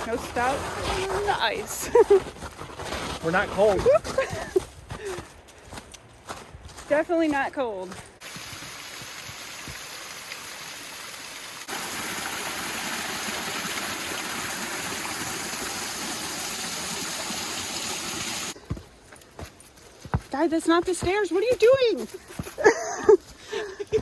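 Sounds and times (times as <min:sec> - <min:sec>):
flowing water rushing: 0:08.2 - 0:18.6.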